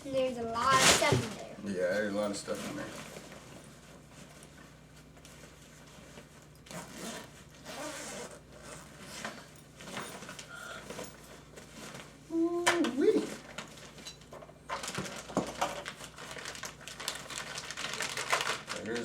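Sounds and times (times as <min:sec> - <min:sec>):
zipper being opened: 0:06.6 - 0:10.4.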